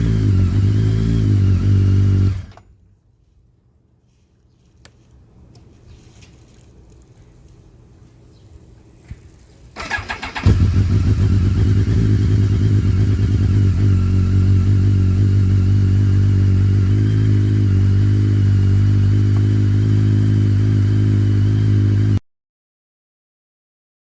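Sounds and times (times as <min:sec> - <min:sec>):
motorcycle engine starting and idling: 0:00.0 - 0:02.8, 0:09.7 - 0:22.2
engine rattling: 0:09.8 - 0:22.2.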